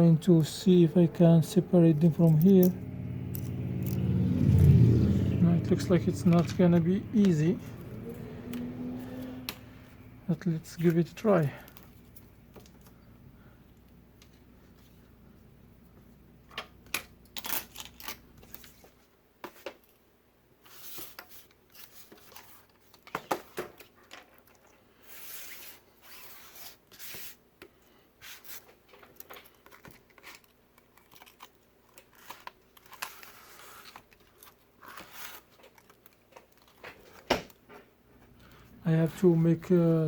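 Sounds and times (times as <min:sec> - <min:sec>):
small tools clicking and tapping: 0:03.3 - 0:04.0
tearing crinkling sounds: 0:17.3 - 0:19.0, 0:29.3 - 0:37.2.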